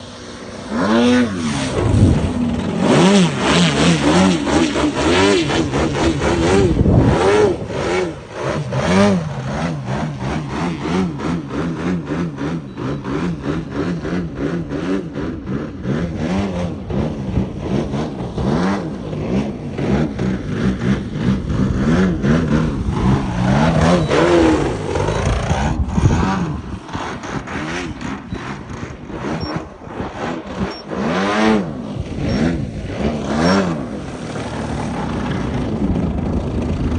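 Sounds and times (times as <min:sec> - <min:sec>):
model airplane engine: 0:00.0 - 0:36.9
wind buffeting microphone: 0:01.6 - 0:09.1, 0:19.7 - 0:36.9.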